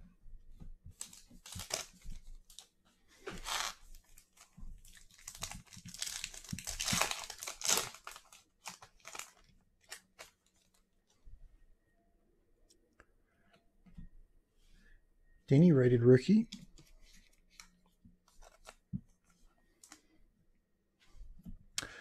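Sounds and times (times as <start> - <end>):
plastic wrapping crinkling: 0.9 - 2.7, 3.4 - 10.8.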